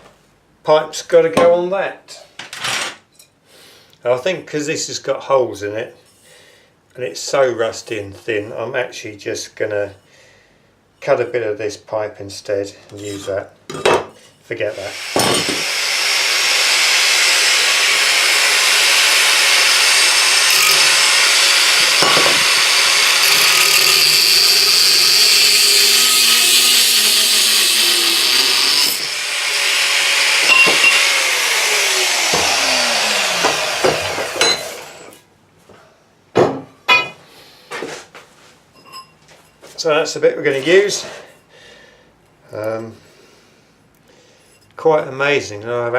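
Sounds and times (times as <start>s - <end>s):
power tool cutting steel pipe: 14.7s - 35.2s.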